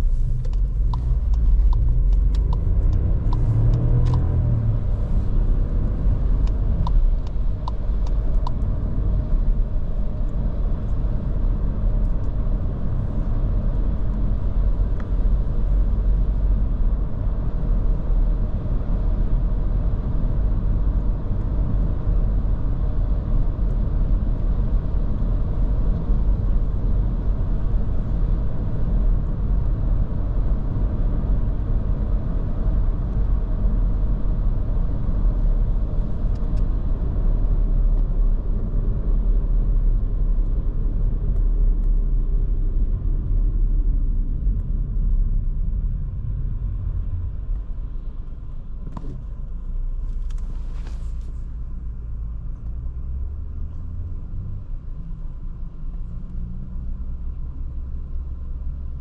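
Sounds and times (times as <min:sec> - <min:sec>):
engine and tyre rumble in cabin: 0:00.0 - 0:59.0.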